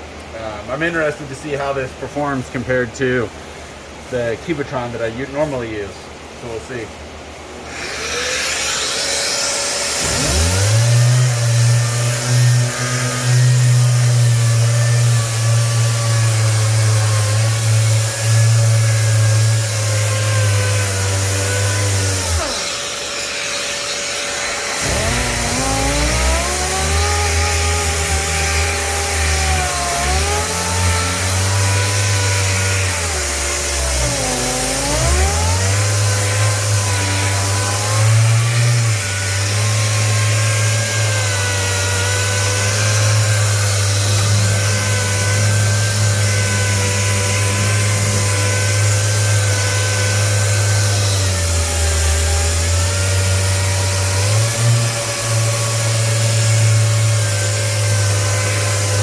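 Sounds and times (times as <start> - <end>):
random orbital sander sanding: 7.7 - 59.0.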